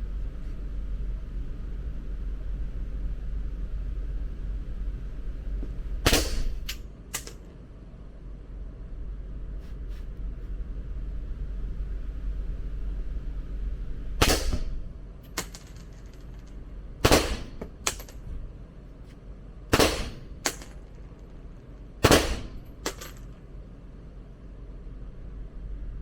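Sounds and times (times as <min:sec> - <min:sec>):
gunshots: 0:06.0 - 0:06.6, 0:14.2 - 0:14.8, 0:17.0 - 0:18.1, 0:19.7 - 0:20.7, 0:22.0 - 0:23.2.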